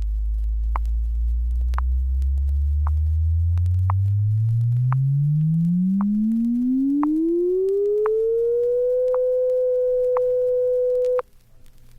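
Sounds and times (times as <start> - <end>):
pure tone gliding upward: 1.2 - 11.2.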